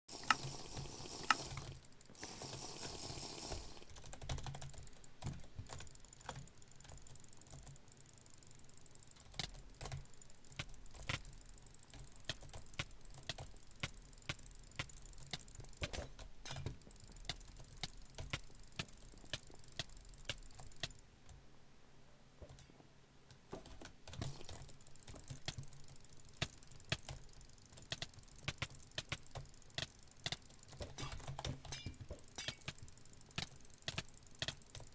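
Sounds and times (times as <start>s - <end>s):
small sharp clicks: 22.4s - 34.9s.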